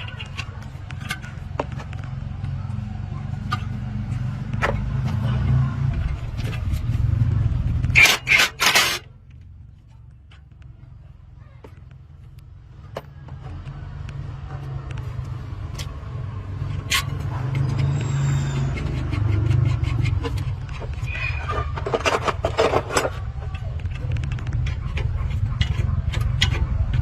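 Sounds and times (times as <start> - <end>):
engine rumbling: 0.0 - 27.0.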